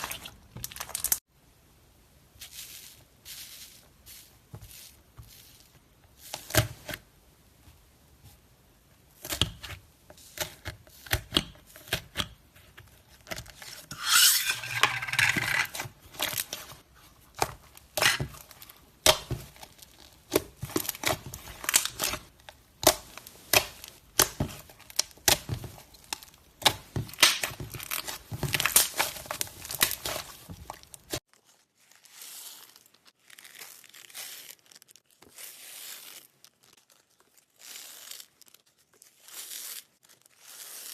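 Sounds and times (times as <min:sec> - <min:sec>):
slime squelching and popping: 0:00.0 - 0:01.2, 0:15.6 - 0:31.2.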